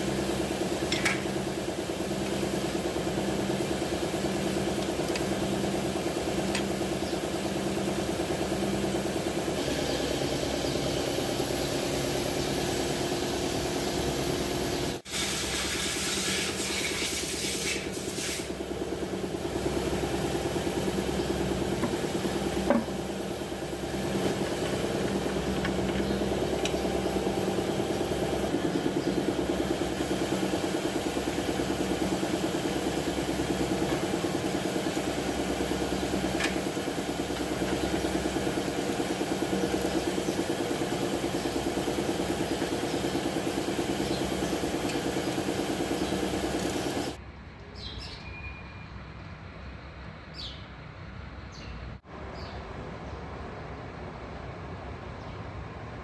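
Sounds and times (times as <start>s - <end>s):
car engine idling: 0.0s - 15.0s, 18.5s - 47.2s.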